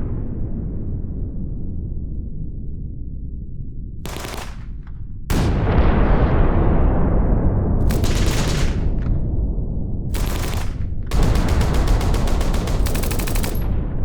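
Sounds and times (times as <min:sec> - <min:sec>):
low rumble of battle: 0:00.0 - 0:14.0
machine-gun fire: 0:04.1 - 0:05.6, 0:07.8 - 0:09.2, 0:10.1 - 0:14.0.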